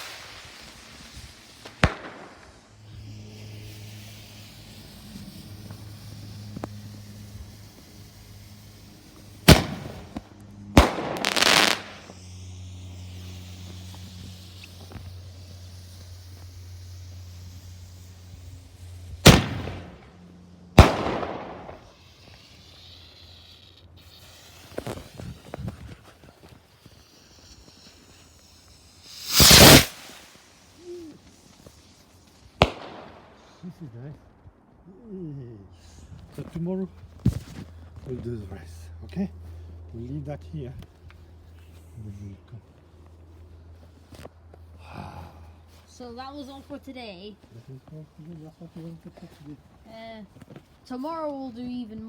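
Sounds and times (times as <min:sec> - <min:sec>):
firework bangs: 0:00.0 - 0:20.1, 0:20.8 - 0:22.9, 0:24.0 - 0:33.6
firework hiss: 0:00.0 - 0:33.9.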